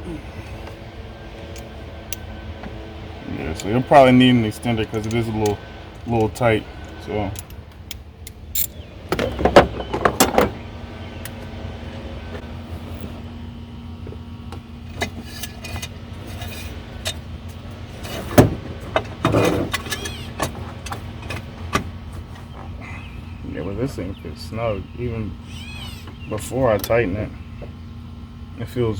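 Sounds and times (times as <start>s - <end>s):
steady low hum: 0.0s - 28.9s
metal tools clinking and rattling: 4.5s - 10.6s, 14.9s - 21.5s.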